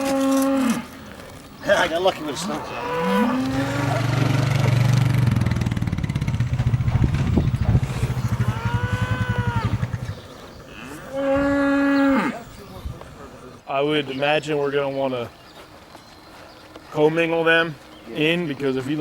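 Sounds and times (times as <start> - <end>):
cattle mooing: 0.0 - 4.9, 7.9 - 12.6.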